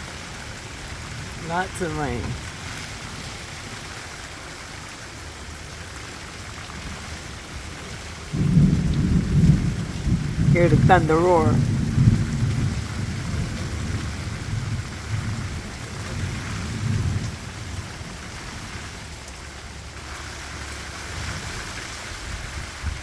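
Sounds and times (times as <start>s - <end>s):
heavy rain falling: 0.0s - 23.0s
thunder rumbling: 8.3s - 18.7s.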